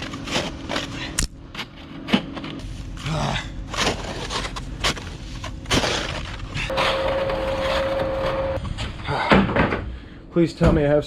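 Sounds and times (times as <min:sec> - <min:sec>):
steady tone: 0:06.7 - 0:08.7.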